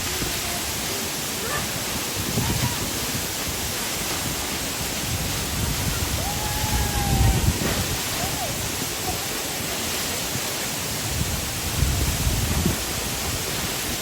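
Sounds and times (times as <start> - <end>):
waterfall roaring: 0.0 - 14.0
wind buffeting microphone: 0.0 - 14.0.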